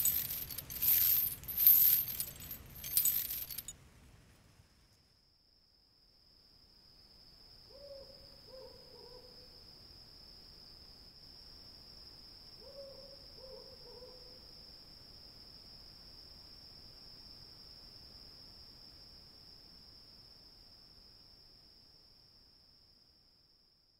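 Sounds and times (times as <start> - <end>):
crickets trilling: 0.0 - 3.6
owl hooting: 7.7 - 9.2.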